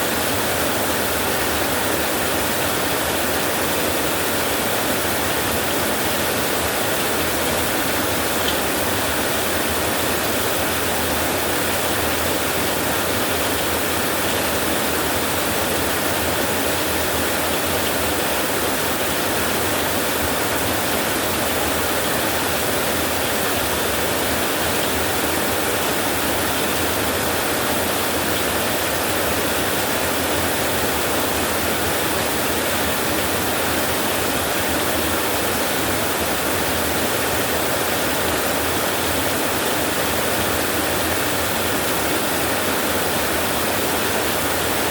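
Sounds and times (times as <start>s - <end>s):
heavy rain on a tin roof: 0.0s - 44.9s.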